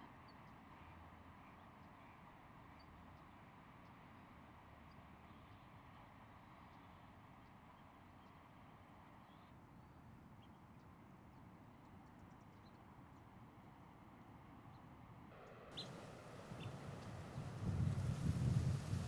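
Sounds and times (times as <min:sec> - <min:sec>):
faint high bird chirps: 0:15.8 - 0:19.0
outdoor background hiss: 0:15.8 - 0:19.0.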